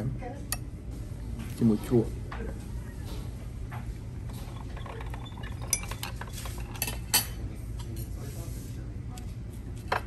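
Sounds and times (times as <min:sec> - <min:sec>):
low room hum: 0:00.0 - 0:10.0
cutlery clinking against dishes: 0:04.5 - 0:08.0.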